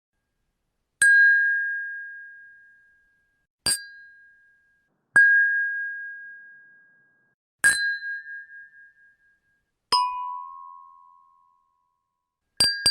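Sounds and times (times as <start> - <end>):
glasses clinking and ringing: 1.0 - 2.6, 3.7 - 4.6, 5.2 - 6.5, 7.6 - 9.0, 9.9 - 11.1, 12.6 - 12.9.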